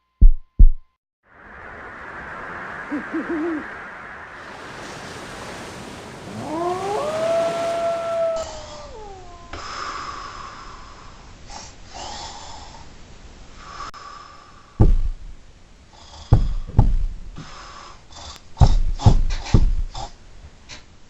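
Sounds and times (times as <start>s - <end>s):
heavy deep thumps: 0.2s - 0.9s, 14.8s - 15.5s, 16.3s - 17.4s, 18.6s - 20.1s.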